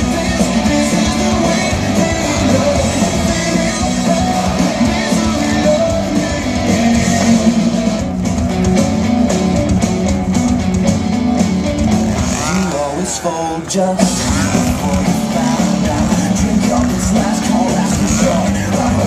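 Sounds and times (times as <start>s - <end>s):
person singing: 0.0s - 8.0s, 12.1s - 19.0s
loud guitar rock music: 0.0s - 19.0s.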